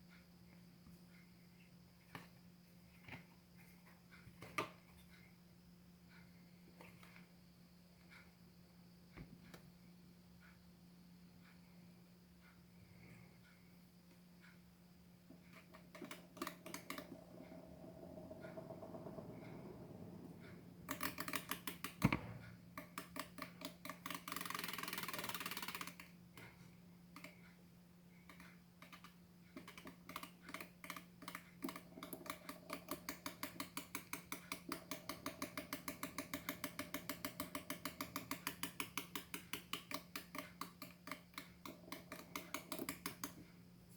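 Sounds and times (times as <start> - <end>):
small fan humming: 0.0 - 43.9
rapid even ticking: 12.4 - 43.9.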